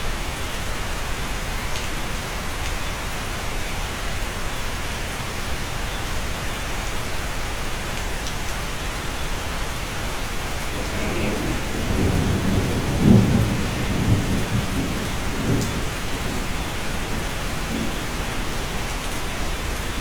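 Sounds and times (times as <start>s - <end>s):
rain falling on cabin: 0.1s - 20.0s
thunder rolling: 10.7s - 20.0s.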